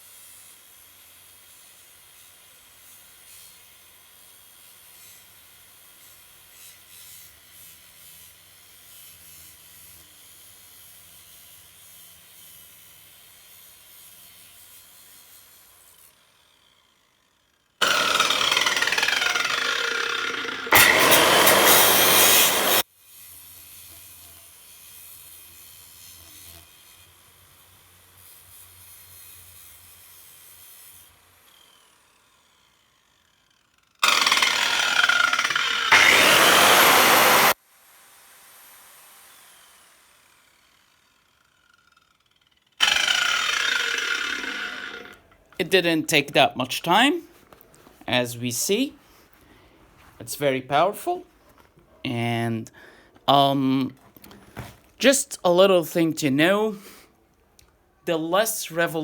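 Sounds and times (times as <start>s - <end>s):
grinder whine: 17.8s - 22.8s, 31.0s - 37.6s, 38.6s - 48.0s
angle grinder cutting metal: 17.8s - 33.3s, 34.0s - 37.6s, 38.3s - 47.2s.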